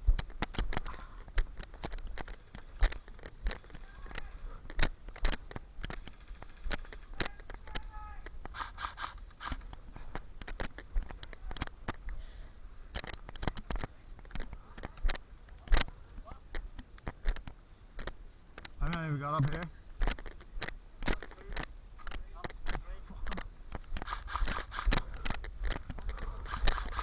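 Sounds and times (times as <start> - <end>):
footsteps crunching on rough ground: 0.0 - 6.0
sharp clicks: 0.2 - 9.8, 16.5 - 27.0.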